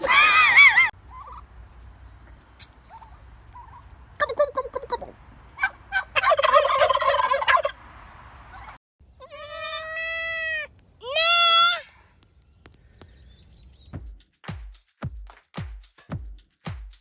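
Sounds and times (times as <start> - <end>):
turkey gobbling: 0.2 - 10.5
goat bleating: 9.1 - 11.9.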